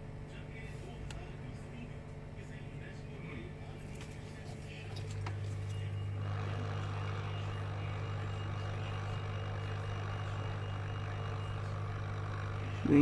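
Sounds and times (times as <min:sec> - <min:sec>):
hot air station hissing: 0:06.2 - 0:13.0.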